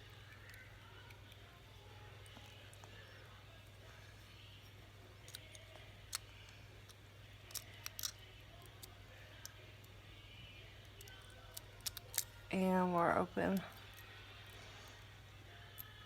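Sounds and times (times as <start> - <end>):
lock pick clicking in padlock: 7.5 - 9.6, 11.0 - 12.3.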